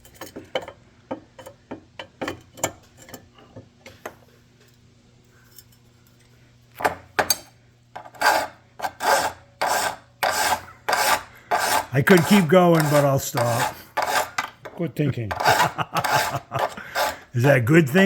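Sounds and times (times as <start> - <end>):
hand file rasping: 8.0 - 14.6, 15.3 - 17.6.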